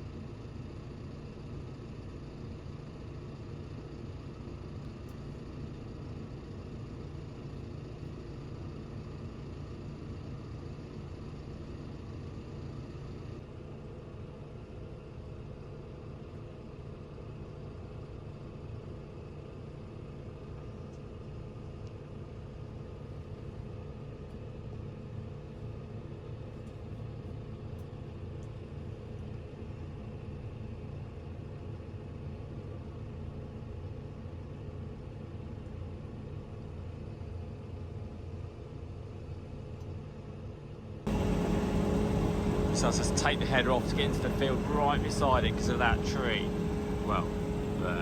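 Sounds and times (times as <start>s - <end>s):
farm machine engine drone: 41.1s - 48.0s.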